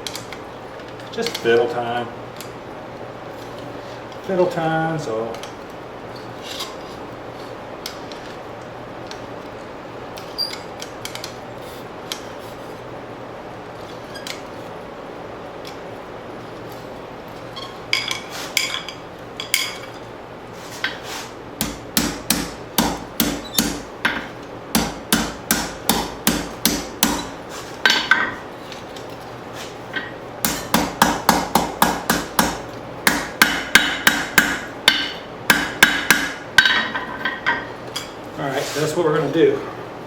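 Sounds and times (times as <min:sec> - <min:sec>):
hammer striking steel on anvil: 0:21.6 - 0:24.2, 0:24.8 - 0:28.4, 0:30.0 - 0:37.6.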